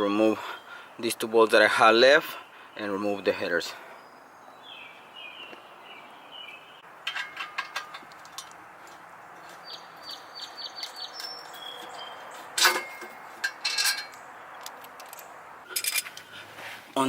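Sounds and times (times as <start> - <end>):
metal tools clinking: 7.0 - 8.6, 12.6 - 16.3
metallic clank and clatter: 7.0 - 8.6, 12.6 - 14.2.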